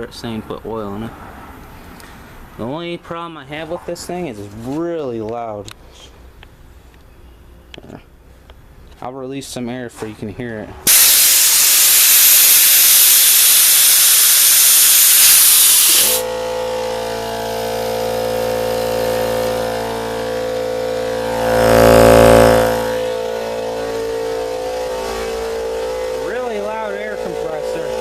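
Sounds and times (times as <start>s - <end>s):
compressed air hissing: 10.9s - 16.3s
air compressor motor droning: 10.9s - 28.0s.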